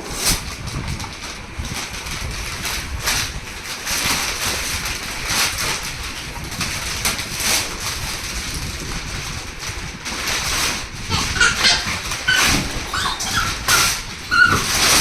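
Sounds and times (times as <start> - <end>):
gift wrapping tearing and crinkling: 0.1 - 15.0.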